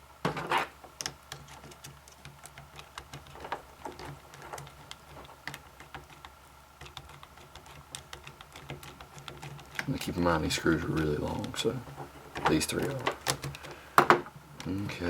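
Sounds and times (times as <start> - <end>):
screwdriver clicking on screws: 1.0 - 14.1.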